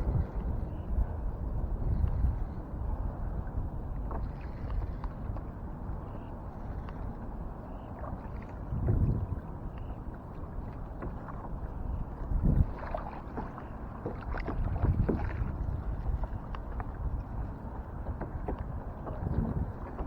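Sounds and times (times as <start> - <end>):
water splashing around a kayak: 0.0 - 20.0
wind rumble on microphone: 0.0 - 20.0.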